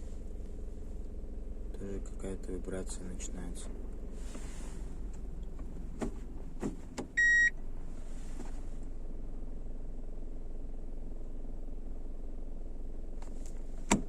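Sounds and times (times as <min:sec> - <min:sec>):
car engine idling rumble: 0:00.0 - 0:14.0
car electronic beep: 0:07.2 - 0:07.6.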